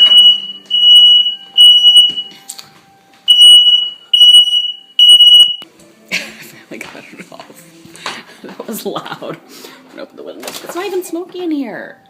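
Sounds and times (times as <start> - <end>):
smoke alarm beeping: 0.0 - 2.4, 3.3 - 5.6.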